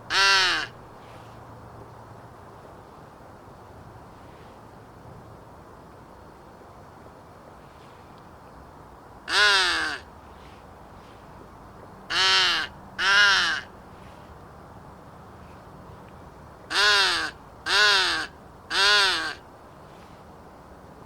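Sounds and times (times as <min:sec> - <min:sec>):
crow call caws: 0:00.1 - 0:00.8, 0:09.3 - 0:10.1, 0:12.1 - 0:13.7, 0:16.7 - 0:19.4.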